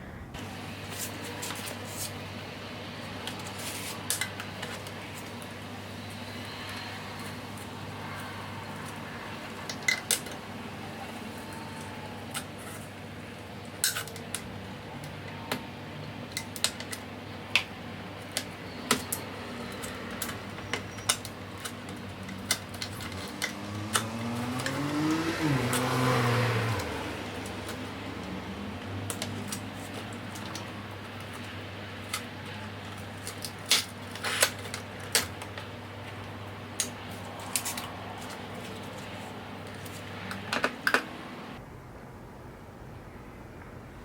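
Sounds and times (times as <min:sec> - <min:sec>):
steady low hum: 0:00.0 - 0:44.0
drone rising in pitch: 0:23.5 - 0:29.0.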